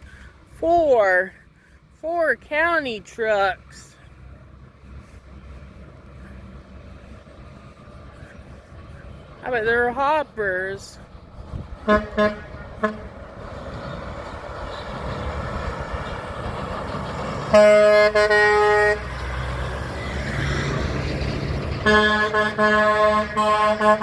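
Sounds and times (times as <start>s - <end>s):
truck engine and road noise: 0.0s - 24.0s
truck air horn: 11.8s - 13.2s, 17.4s - 19.2s, 21.8s - 24.0s.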